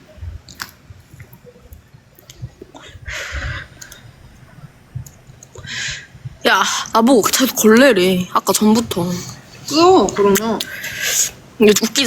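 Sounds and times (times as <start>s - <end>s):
wet mouth noises with clicks: 0.5s - 2.8s, 3.8s - 4.0s
breathy rush of air: 2.4s - 7.0s.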